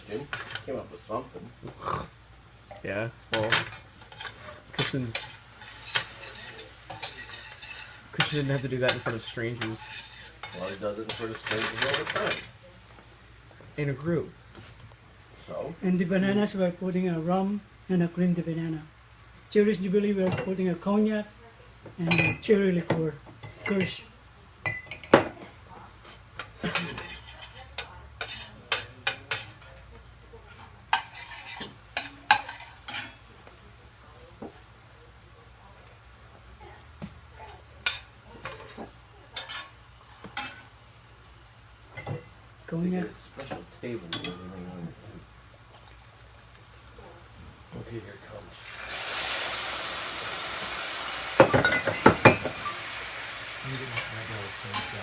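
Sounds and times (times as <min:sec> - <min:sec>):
fruit sizzling in a hot pan: 0:00.0 - 0:55.0
metal utensils clinking on pan: 0:02.7 - 0:12.5, 0:22.1 - 0:22.5, 0:24.6 - 0:25.4, 0:26.4 - 0:29.8, 0:30.5 - 0:33.3, 0:37.4 - 0:40.7, 0:43.4 - 0:44.5, 0:51.4 - 0:52.8, 0:53.8 - 0:55.0.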